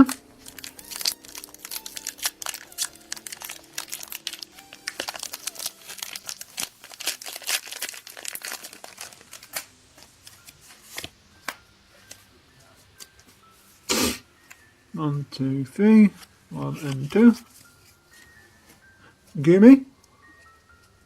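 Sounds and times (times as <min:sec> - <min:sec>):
foil wrapper crinkling and tearing: 0:00.0 - 0:11.1.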